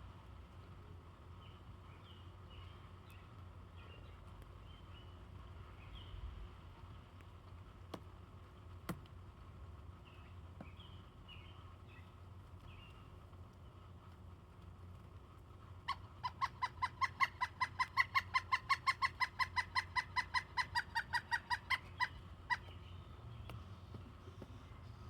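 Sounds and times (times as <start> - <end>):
woodpecker calling: 15.9 - 23.6.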